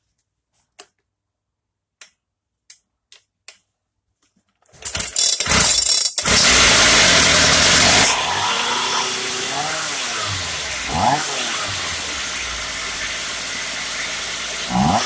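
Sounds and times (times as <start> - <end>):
concrete cutter engine running: 5.4 - 15.0.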